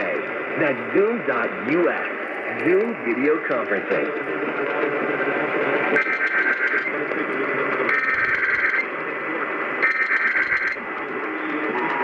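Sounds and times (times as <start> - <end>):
radio static hiss: 0.0 - 12.0
buzzing two-tone digital data bursts: 6.0 - 6.9, 7.9 - 8.8, 9.8 - 10.8.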